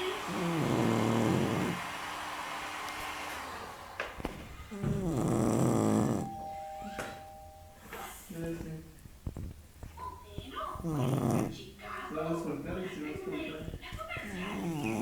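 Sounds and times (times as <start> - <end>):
dog snoring: 0.0 - 2.0, 4.7 - 7.2, 10.6 - 11.8, 14.0 - 15.0.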